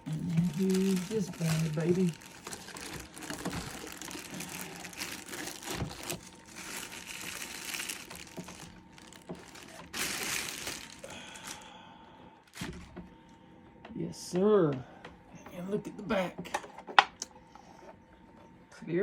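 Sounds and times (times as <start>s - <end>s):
plastic packaging crinkling: 0.0s - 11.8s, 12.4s - 13.0s.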